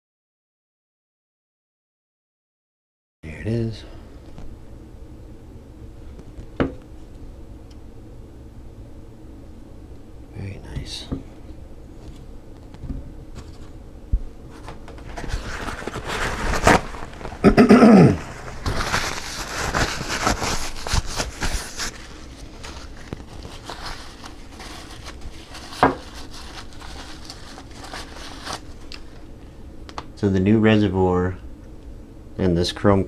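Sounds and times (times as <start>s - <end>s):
rustling: 11.9s - 13.9s, 14.5s - 29.3s.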